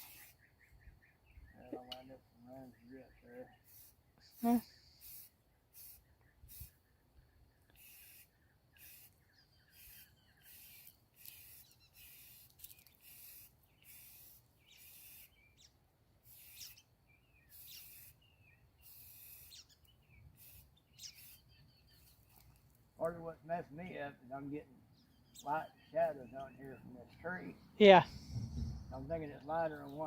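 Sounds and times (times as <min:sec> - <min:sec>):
spray can hissing: 0:03.7 - 0:06.8, 0:07.8 - 0:09.2, 0:09.8 - 0:15.4, 0:16.2 - 0:16.8, 0:17.5 - 0:18.1, 0:18.8 - 0:19.6, 0:20.4 - 0:21.4.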